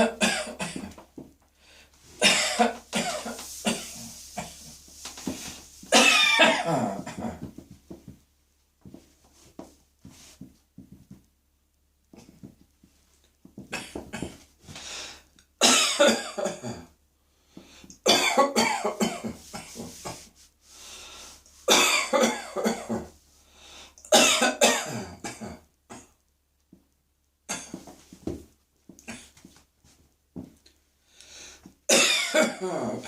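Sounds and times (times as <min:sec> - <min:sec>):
person coughing harshly: 0:00.0 - 0:01.0, 0:02.2 - 0:04.6, 0:05.9 - 0:07.5, 0:15.6 - 0:16.9, 0:18.0 - 0:20.2, 0:21.7 - 0:23.1, 0:24.1 - 0:26.1, 0:31.9 - 0:33.0.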